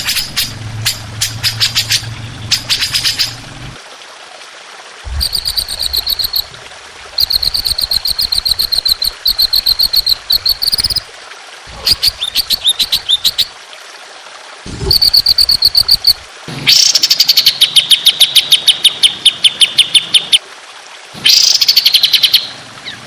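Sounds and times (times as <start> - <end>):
songbird singing high notes: 5.1 - 6.5, 7.2 - 11.0, 11.8 - 13.5, 14.9 - 20.4.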